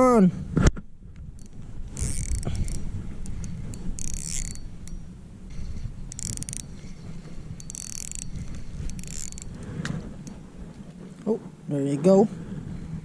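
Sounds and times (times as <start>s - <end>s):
fishing reel gear ticking: 1.4s - 10.5s.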